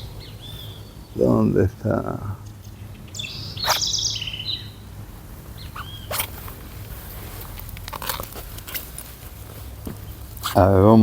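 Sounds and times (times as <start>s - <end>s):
birds calling: 0.0s - 11.0s
low steady hum: 0.0s - 11.0s
handling clicks and knocks: 5.7s - 10.6s.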